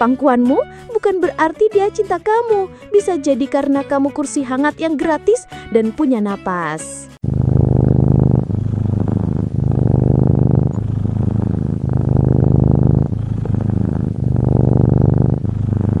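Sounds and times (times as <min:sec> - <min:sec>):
cat purring loudly: 0:07.2 - 0:16.0.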